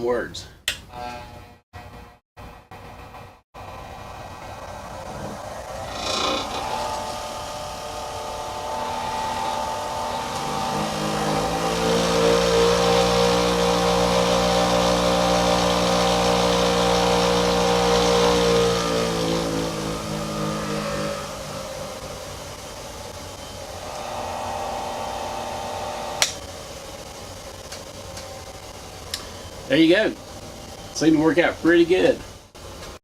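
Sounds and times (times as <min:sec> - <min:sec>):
bench grinder motor hum: 0:03.7 - 0:27.0.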